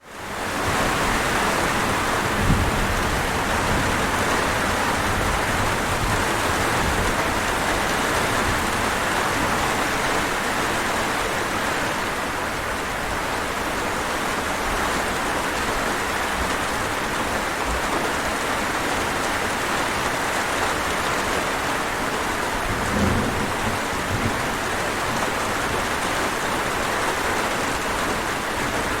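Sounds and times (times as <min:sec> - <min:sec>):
heavy rain falling: 0:00.0 - 0:29.0
thunder rumbling: 0:00.7 - 0:08.8, 0:22.5 - 0:26.0.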